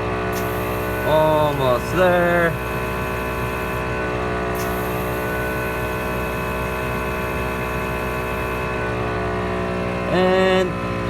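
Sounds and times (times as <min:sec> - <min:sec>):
air compressor running: 0:00.0 - 0:11.0.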